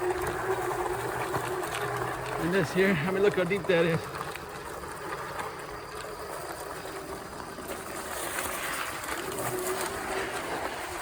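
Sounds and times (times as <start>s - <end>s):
tyres rolling on road: 0.0s - 11.0s.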